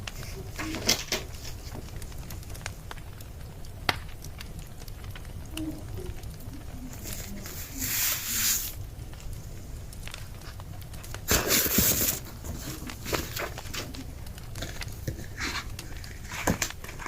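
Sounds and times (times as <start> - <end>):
wood fire crackling and popping: 0.0 - 17.0
hissing rush: 5.8 - 10.0, 11.1 - 16.4.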